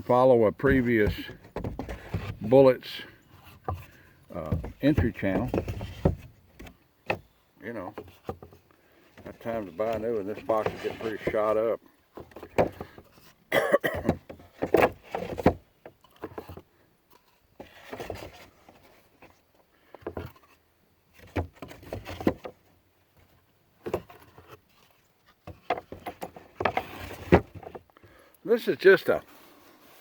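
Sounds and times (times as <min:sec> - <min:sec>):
wooden boards knocking in crate: 0:00.6 - 0:02.5, 0:04.4 - 0:06.3.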